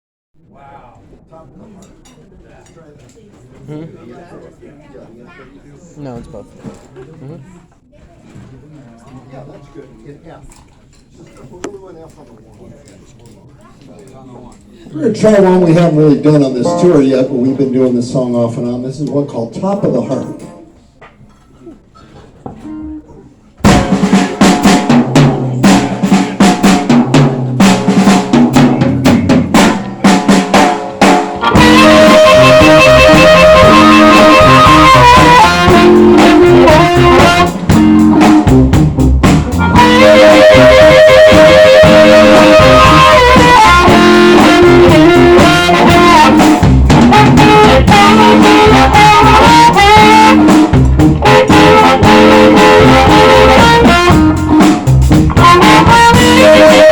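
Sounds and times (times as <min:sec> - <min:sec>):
drum kit: 0:22.6 - 0:56.9
electric guitar: 0:22.6 - 0:56.9
harmonica: 0:31.4 - 0:38.2, 0:39.6 - 0:50.6
bass: 0:31.4 - 0:56.9.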